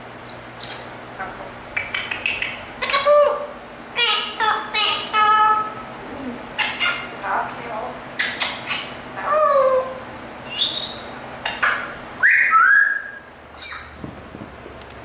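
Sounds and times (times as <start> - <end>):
parrot noisy calls: 6.5 - 7.3, 8.2 - 14.1
parrot whistling: 8.2 - 14.1.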